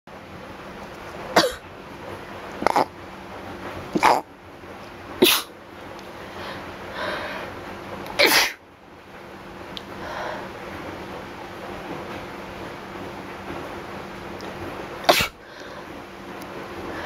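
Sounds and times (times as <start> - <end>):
person sneezing: 1.4 - 1.6, 4.0 - 4.2, 5.2 - 5.5, 8.2 - 8.6, 15.1 - 15.4
breathy inhaling: 6.2 - 7.6, 9.9 - 10.6, 15.4 - 16.0.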